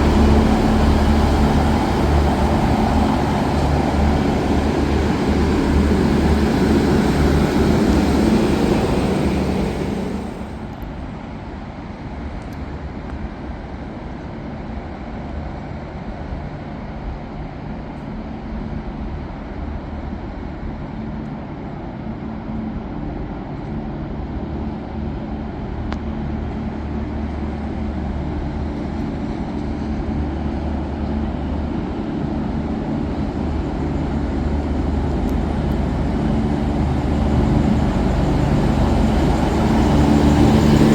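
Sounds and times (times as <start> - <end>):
rushing noise: 0.0 - 10.8, 32.9 - 40.9
train engine humming: 0.0 - 11.0, 22.7 - 40.9.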